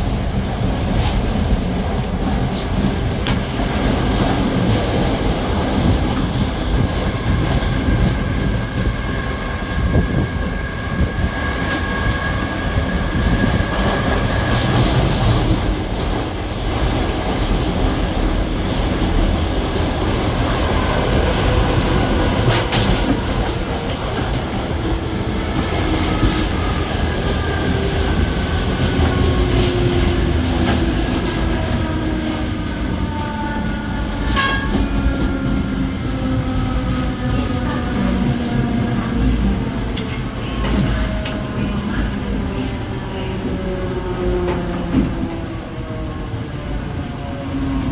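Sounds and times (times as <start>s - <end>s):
train wheels rumbling on track: 0.0s - 47.9s.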